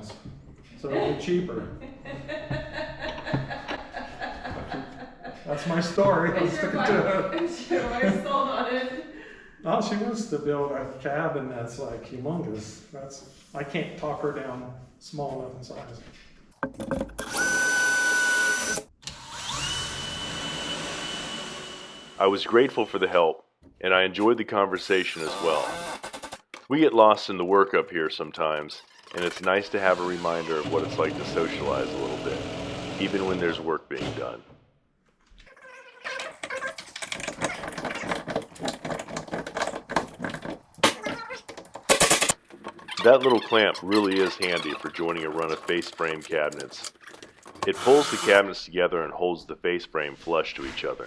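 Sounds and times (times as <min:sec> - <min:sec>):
drill clicks: 0:17.1 - 0:20.0, 0:24.8 - 0:26.7, 0:44.8 - 0:48.4
power drill whining: 0:17.2 - 0:22.2, 0:24.8 - 0:26.6, 0:28.9 - 0:33.4, 0:47.6 - 0:48.4.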